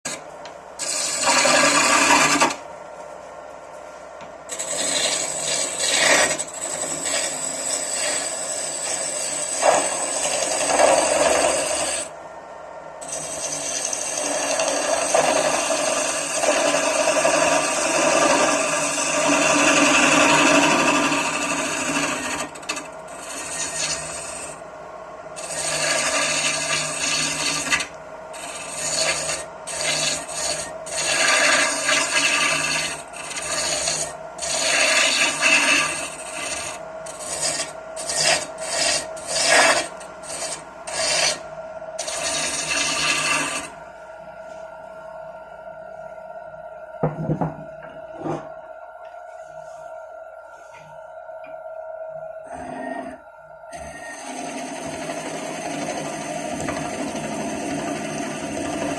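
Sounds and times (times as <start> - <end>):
tool scraping spinning wood: 0.0 - 12.2, 13.0 - 24.6, 25.3 - 43.9, 47.0 - 51.0, 53.8 - 58.9
lathe motor hum: 0.1 - 2.8, 4.1 - 58.9.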